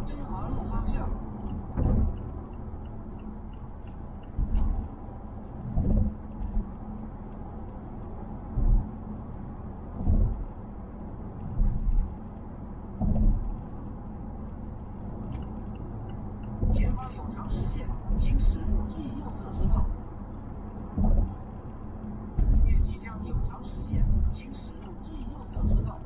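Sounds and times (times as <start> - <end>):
road and engine rumble: 0.0 - 26.0
low thump: 1.7 - 2.2, 4.4 - 4.9, 5.7 - 6.7, 8.5 - 8.9, 10.0 - 10.4, 13.0 - 13.4, 20.9 - 21.3, 22.3 - 22.8.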